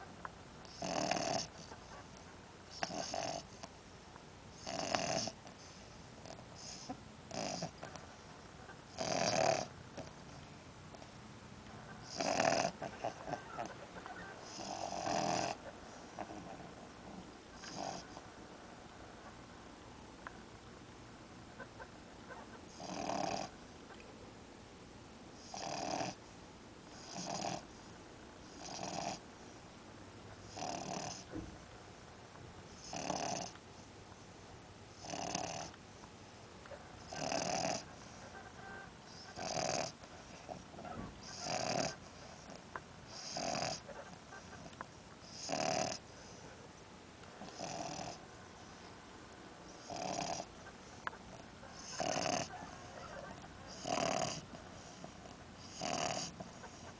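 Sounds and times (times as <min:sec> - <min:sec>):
dog snoring: 0:00.6 - 0:01.9, 0:02.7 - 0:03.7, 0:04.5 - 0:08.0, 0:08.9 - 0:10.2, 0:12.0 - 0:13.7, 0:14.4 - 0:18.2, 0:22.7 - 0:23.6, 0:25.4 - 0:26.2, 0:26.9 - 0:29.2, 0:30.4 - 0:31.4, 0:32.7 - 0:33.6, 0:34.9 - 0:35.8, 0:37.0 - 0:38.3, 0:39.1 - 0:46.4, 0:47.4 - 0:48.8, 0:49.7 - 0:56.9.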